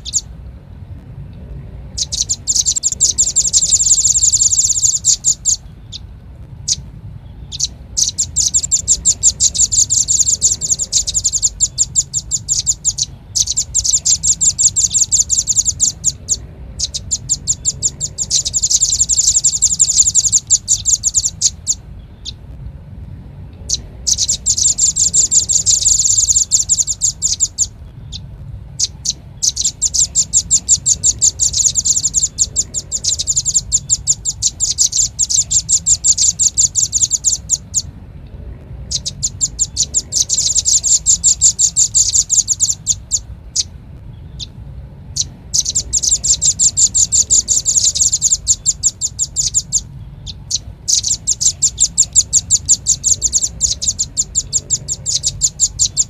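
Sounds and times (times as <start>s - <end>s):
bird trilling high chips: 0.0s - 0.3s, 1.9s - 22.4s, 23.6s - 37.9s, 38.9s - 43.7s, 45.2s - 56.0s
faint low hum: 0.0s - 56.0s.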